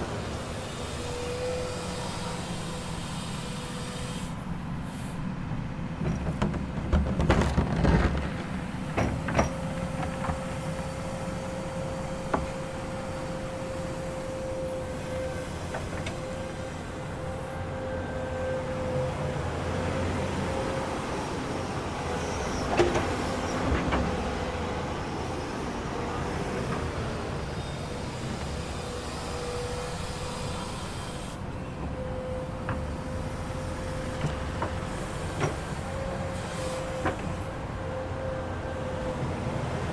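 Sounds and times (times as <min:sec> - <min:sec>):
excavator engine rumble: 0:00.0 - 0:39.9.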